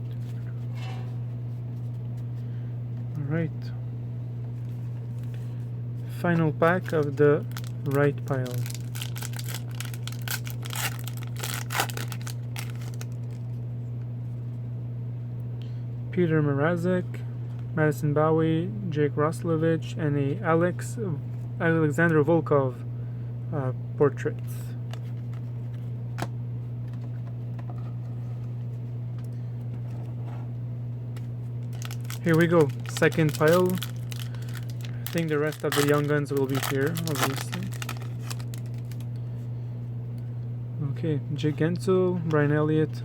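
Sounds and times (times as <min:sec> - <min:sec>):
steady low hum: 0:00.0 - 0:43.0
foil pack crinkling: 0:06.2 - 0:13.6, 0:31.2 - 0:39.2.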